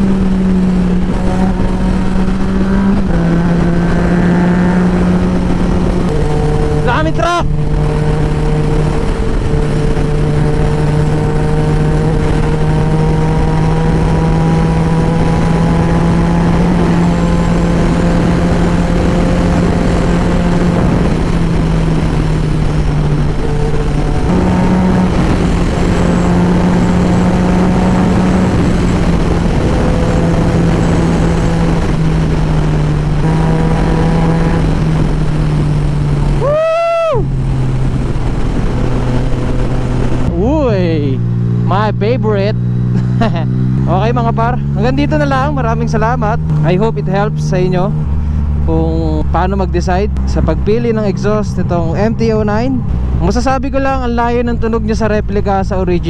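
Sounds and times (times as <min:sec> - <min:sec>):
motorcycle engine cruising: 0:00.0 - 0:56.0
wind noise: 0:00.0 - 0:56.0.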